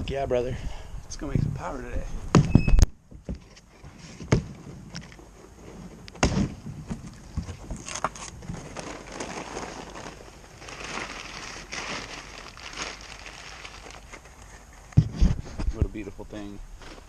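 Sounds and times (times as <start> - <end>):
cardboard box rustling and scraping: 3.3 - 12.4.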